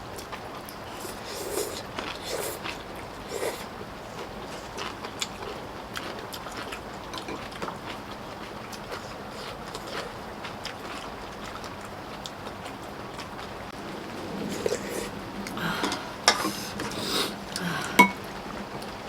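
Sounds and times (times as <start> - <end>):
rain hissing: 0.0 - 7.1, 7.7 - 19.0
people chewing: 0.0 - 19.0
people slurping: 0.9 - 5.6, 14.0 - 18.3.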